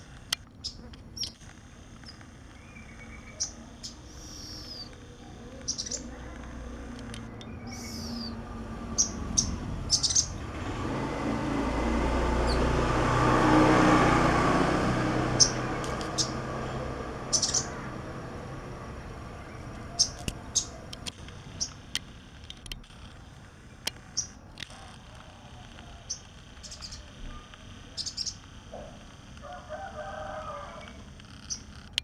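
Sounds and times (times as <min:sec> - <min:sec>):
vehicle passing: 0:00.8 - 0:31.9
bird giving sharp high chirps: 0:02.0 - 0:04.9, 0:05.6 - 0:06.1, 0:07.3 - 0:10.4, 0:15.3 - 0:16.4, 0:17.2 - 0:17.9, 0:19.4 - 0:20.9, 0:28.0 - 0:28.4.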